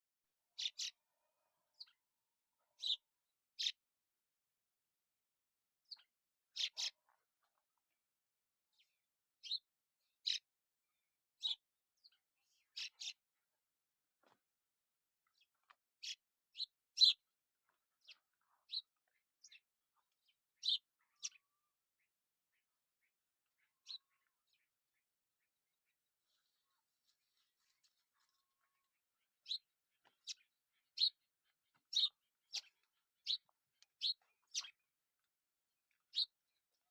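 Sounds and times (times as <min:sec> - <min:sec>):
small bird chirping: 0:00.6 - 0:01.0, 0:02.8 - 0:03.8, 0:05.9 - 0:07.2, 0:10.2 - 0:10.5, 0:11.4 - 0:13.2, 0:15.3 - 0:21.8, 0:23.5 - 0:24.7, 0:26.3 - 0:35.0, 0:35.9 - 0:36.9.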